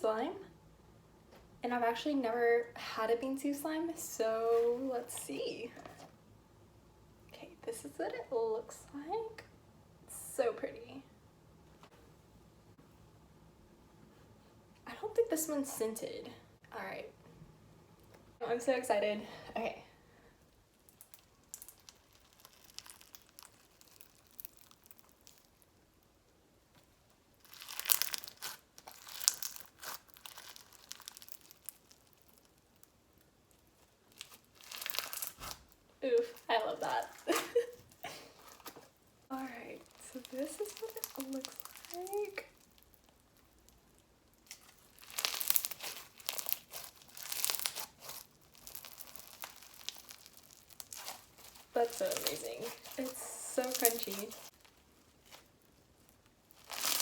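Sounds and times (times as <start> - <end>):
slime with beads crackling crunch: 20.8 - 25.8, 27.3 - 57.0.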